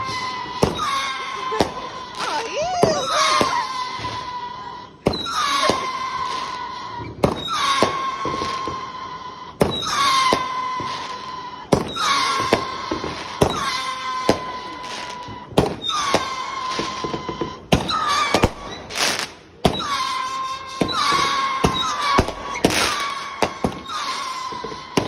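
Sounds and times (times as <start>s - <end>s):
firework whistle: 0.0s - 25.0s
firework pops: 11.7s - 25.0s.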